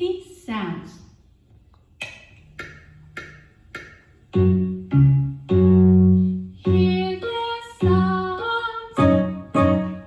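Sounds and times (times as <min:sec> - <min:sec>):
low keyboard notes: 0:02.6 - 0:08.4.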